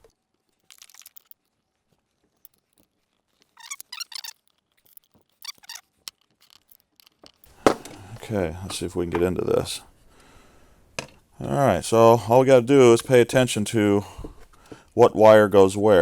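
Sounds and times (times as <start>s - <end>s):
tool scraping plastic: 2.6s - 9.3s.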